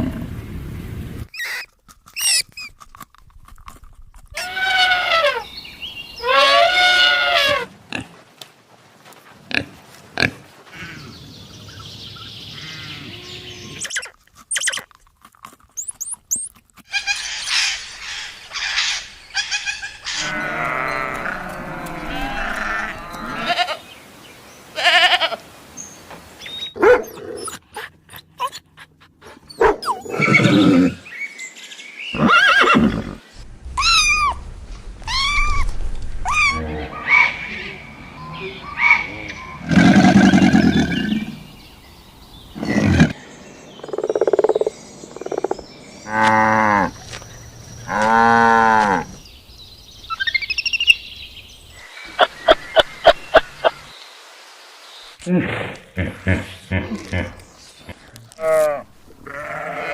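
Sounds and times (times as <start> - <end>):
farm animals calling: 4.3 - 8.0, 12.5 - 14.9, 15.8 - 23.8, 36.3 - 41.5, 56.0 - 59.9.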